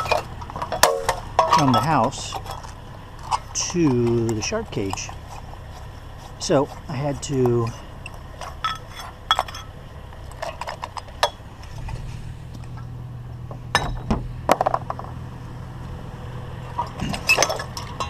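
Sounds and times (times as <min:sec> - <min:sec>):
steady low hum: 0:00.0 - 0:18.0
scrap metal clinking together: 0:08.1 - 0:09.8, 0:16.7 - 0:18.0.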